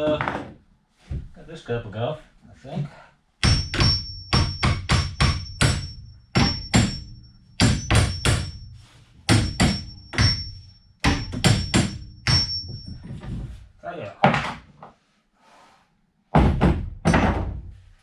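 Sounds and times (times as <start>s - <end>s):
hammer blows on metal: 3.4s - 13.0s.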